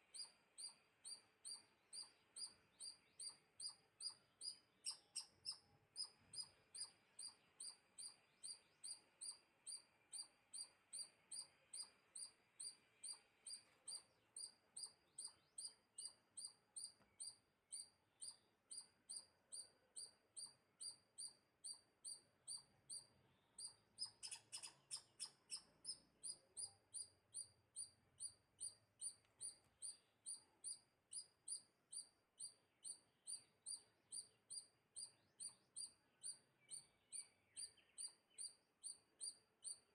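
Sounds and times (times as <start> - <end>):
small animal chirping: 0.0 - 39.9.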